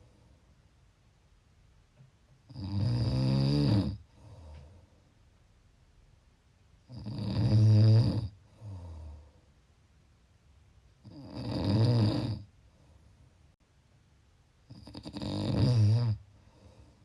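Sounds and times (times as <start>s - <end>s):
person snoring: 2.5s - 4.6s, 6.9s - 9.3s, 11.0s - 12.5s, 14.7s - 16.7s
short quiet breath: 4.2s - 5.1s.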